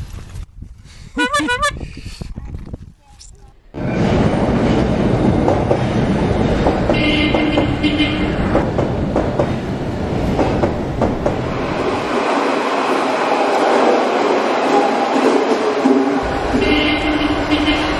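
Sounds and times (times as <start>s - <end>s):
train wheels clattering over rail joints: 3.8s - 11.9s.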